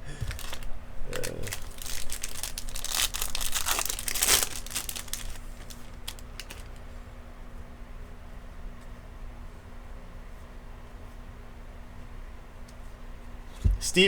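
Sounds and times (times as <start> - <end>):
plastic wrapper tearing and crinkling: 0.1 - 6.8.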